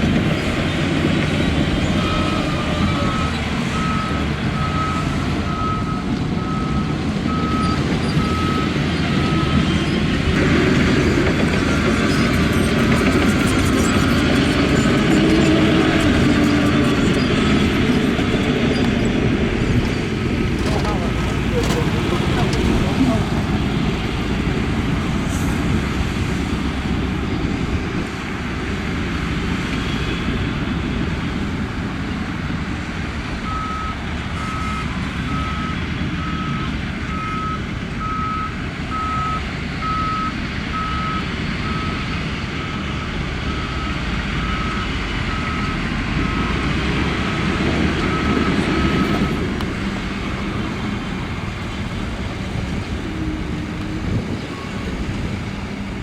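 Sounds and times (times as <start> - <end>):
heavy diesel machinery running: 0.0 - 56.0
reversing alarm beeping: 1.9 - 10.0, 33.4 - 46.7.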